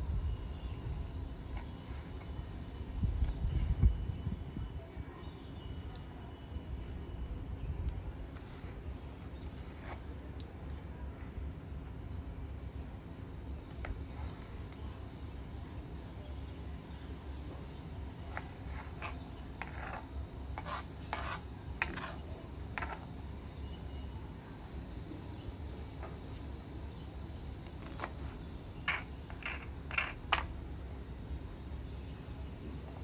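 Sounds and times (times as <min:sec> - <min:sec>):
steady low hum: 0:00.0 - 0:33.0
objects scraping and tapping: 0:01.5 - 0:02.4, 0:08.3 - 0:10.2, 0:18.2 - 0:23.2, 0:27.6 - 0:30.9.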